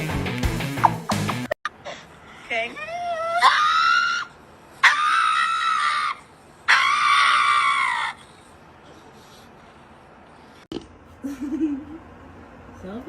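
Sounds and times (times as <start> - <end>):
high-pitched screams: 3.0 - 8.2.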